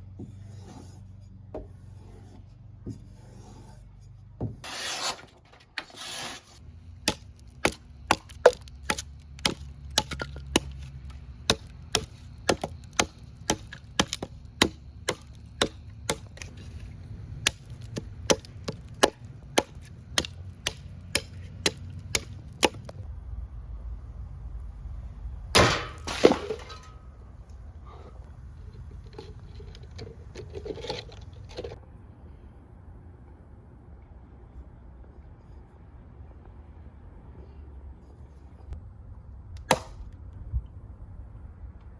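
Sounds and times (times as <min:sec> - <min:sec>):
knife chopping wood: 0:07.0 - 0:10.9, 0:11.5 - 0:16.6, 0:17.4 - 0:23.0.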